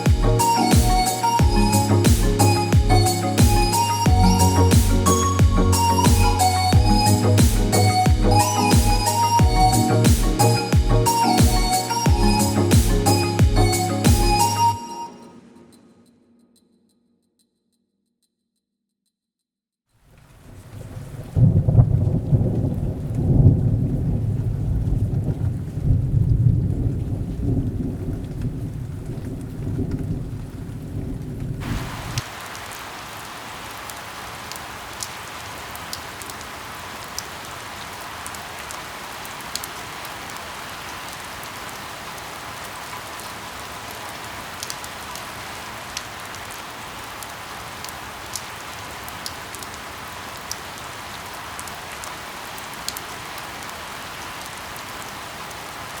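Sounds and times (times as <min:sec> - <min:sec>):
falling rain hiss: 0:00.0 - 0:14.6, 0:26.9 - 0:56.0
rushing water rumble: 0:20.2 - 0:56.0.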